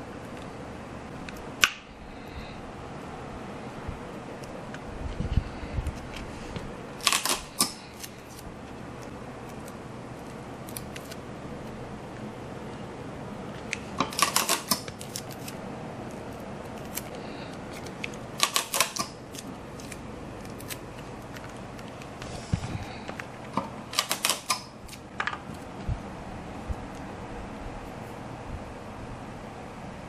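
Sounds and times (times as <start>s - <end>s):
low room hum: 0.0s - 30.0s
sharp clicks and snips: 7.0s - 8.1s, 17.8s - 22.1s, 23.5s - 25.0s.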